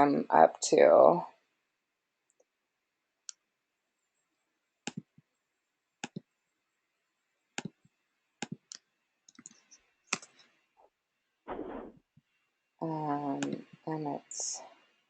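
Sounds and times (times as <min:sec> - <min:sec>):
computer mouse clicking: 0:06.0 - 0:06.3, 0:07.6 - 0:07.8, 0:08.4 - 0:10.5.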